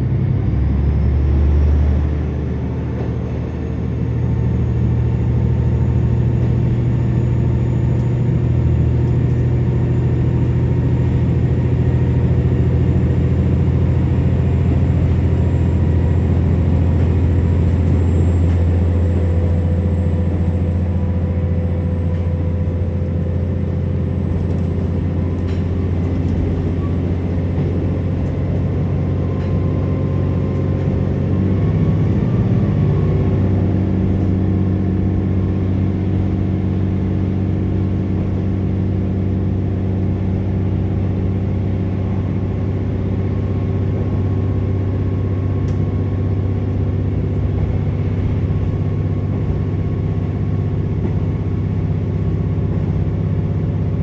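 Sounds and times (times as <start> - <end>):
diesel engine droning: 0.0 - 54.0
train rolling noise: 0.6 - 54.0.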